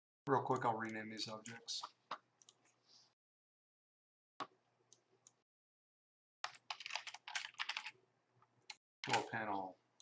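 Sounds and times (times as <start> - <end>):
computer keyboard typing: 6.4 - 8.0, 8.6 - 9.4.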